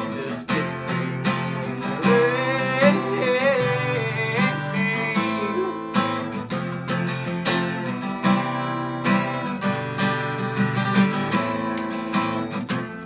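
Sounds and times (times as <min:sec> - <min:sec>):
person singing: 0:00.0 - 0:06.2
acoustic guitar strumming: 0:00.0 - 0:13.0.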